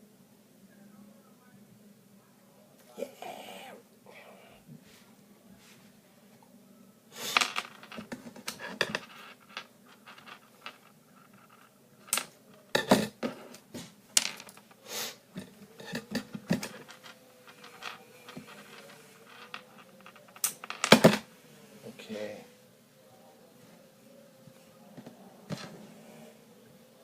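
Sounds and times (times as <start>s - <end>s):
small objects clicking and scraping: 7.2s - 21.3s.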